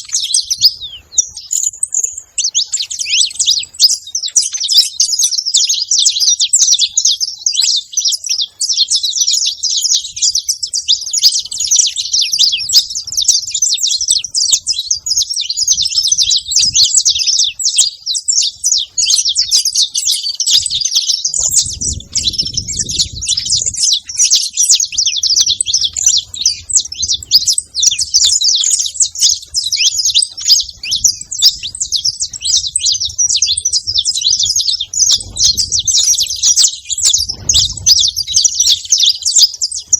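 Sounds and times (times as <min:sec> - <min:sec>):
finches chirping: 0:00.0 - 0:39.9.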